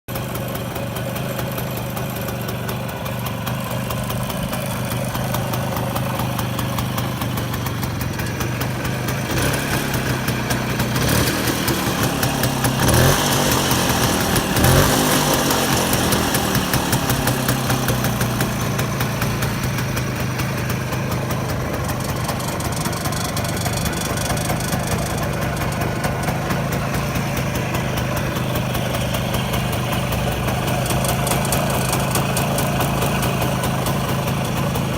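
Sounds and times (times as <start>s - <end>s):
two-stroke engine idling: 0.1s - 34.9s.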